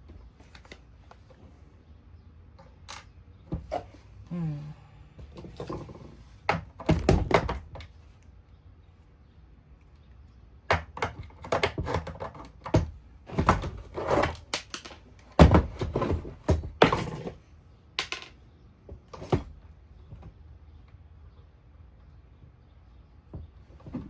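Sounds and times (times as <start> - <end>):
plastic parts knocking and clicking: 5.3 - 8.0, 10.7 - 17.4.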